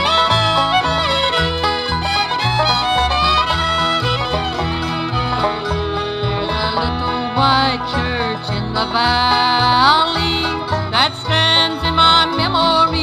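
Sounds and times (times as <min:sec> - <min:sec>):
bluegrass string band playing: 0:00.0 - 0:13.0.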